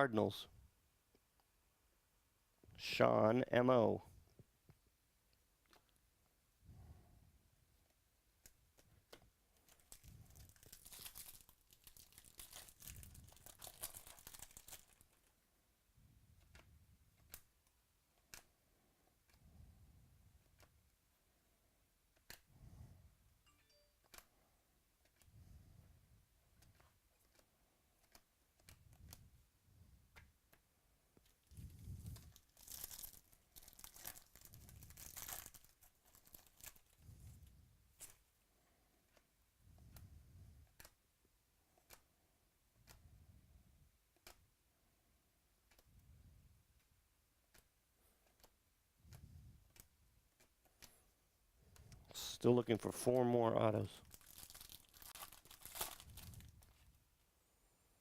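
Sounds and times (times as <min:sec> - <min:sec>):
wrapper crinkling and tearing: 0:09.6 - 0:15.3, 0:32.0 - 0:37.0, 0:54.0 - 0:56.8.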